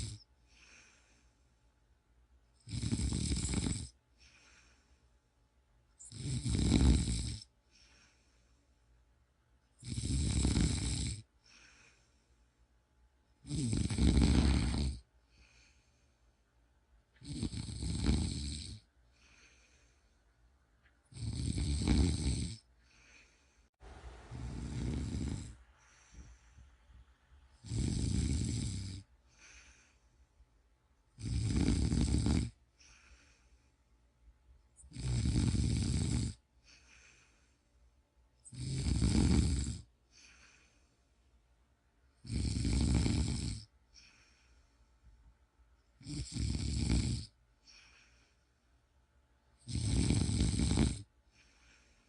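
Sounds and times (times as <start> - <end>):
person snoring: 0.0 - 1.1, 2.6 - 4.8, 6.0 - 8.2, 9.8 - 12.1, 13.4 - 15.9, 17.2 - 19.8, 21.1 - 23.4, 24.2 - 26.4, 27.5 - 30.0, 31.2 - 33.5, 34.8 - 37.3, 38.4 - 40.7, 42.2 - 44.4, 46.0 - 48.2, 49.6 - 51.9
faint breath sounds: 0.0 - 1.8, 3.9 - 5.4, 7.4 - 9.2, 11.2 - 13.0, 14.3 - 16.7, 18.7 - 20.6, 22.6 - 31.1, 32.5 - 34.1, 36.3 - 38.5, 39.8 - 41.5, 43.6 - 45.3, 47.2 - 48.9, 51.0 - 52.0.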